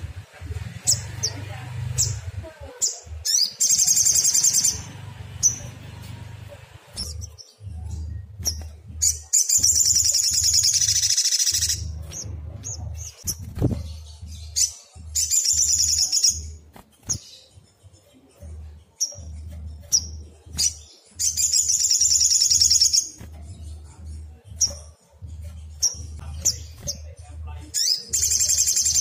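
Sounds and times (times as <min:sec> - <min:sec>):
low hum: 0:00.0 - 0:11.0, 0:11.6 - 0:15.3.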